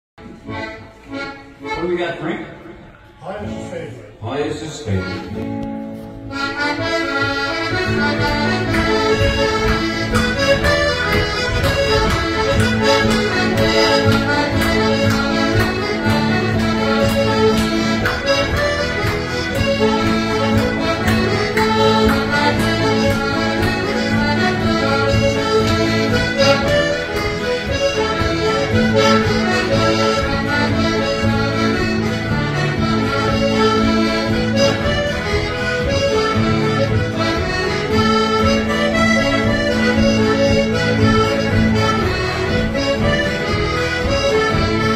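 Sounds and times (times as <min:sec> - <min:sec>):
accordion playing a tune: 0:00.2 - 0:44.9.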